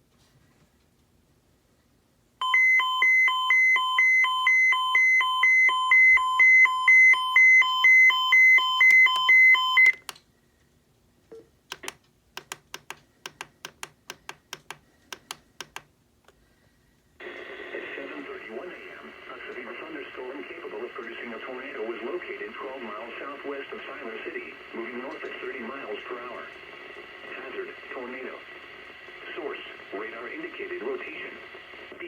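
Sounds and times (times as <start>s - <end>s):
quiet evenly spaced clicks: 8.8s - 10.3s, 11.3s - 16.5s.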